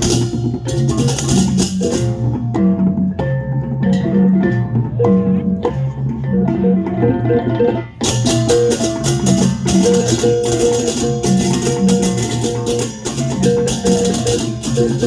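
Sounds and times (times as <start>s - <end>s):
deep gong and drum strokes: 0.0s - 15.0s
clashing hand cymbals: 8.0s - 15.0s.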